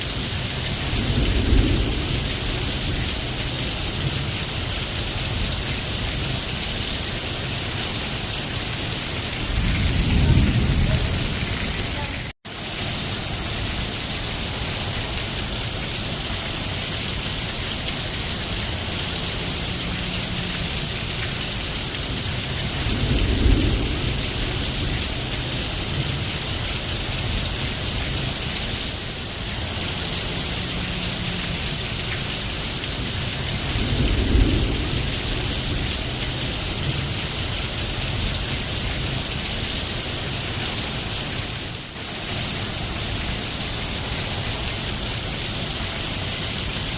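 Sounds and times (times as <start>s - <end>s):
steady rain: 0.0s - 46.9s
thunder rumbling: 0.2s - 6.4s, 9.0s - 12.3s, 18.1s - 39.2s.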